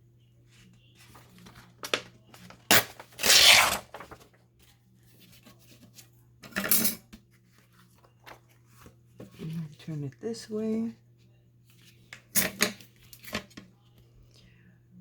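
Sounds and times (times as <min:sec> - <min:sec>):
paper handling: 0:00.6 - 0:06.1
paper tearing: 0:02.7 - 0:04.2.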